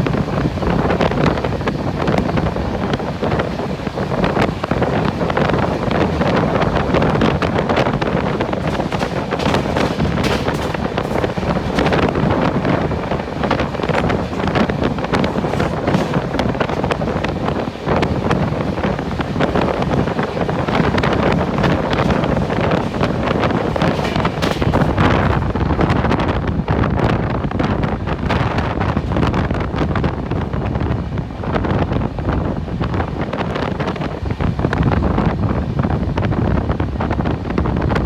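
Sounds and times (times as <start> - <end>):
train running rumble: 0.0 - 38.0
wind on microphone: 0.0 - 38.0
knocks and rattles: 3.3 - 26.2, 28.3 - 30.1.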